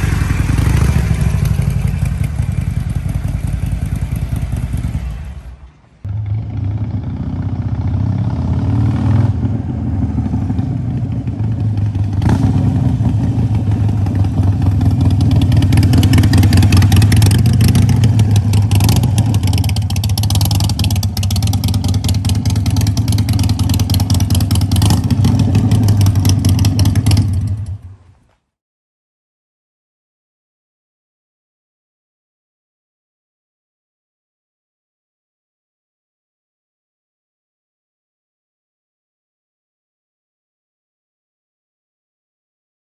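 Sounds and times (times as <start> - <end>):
motorcycle engine running: 0.0 - 28.0.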